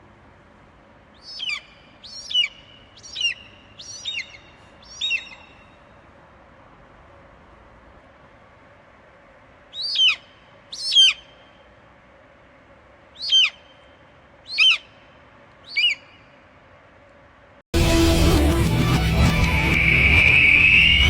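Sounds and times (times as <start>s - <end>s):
faint steady background noise: 0.0s - 17.7s
bird calling: 1.2s - 6.0s, 9.7s - 11.7s, 13.1s - 16.4s.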